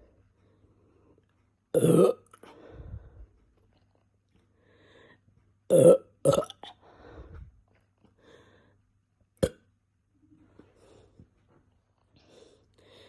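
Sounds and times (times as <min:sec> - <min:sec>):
loud burps: 0:01.8 - 0:02.3, 0:05.7 - 0:06.7.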